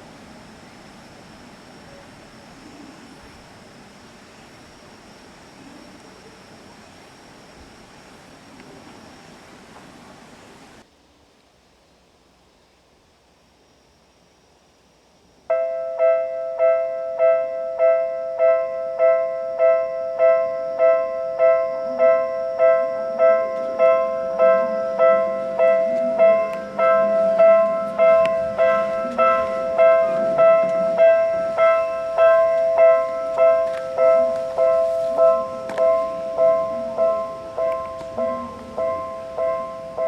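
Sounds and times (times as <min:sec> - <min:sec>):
level crossing warning bell: 0:15.5 - 0:40.0.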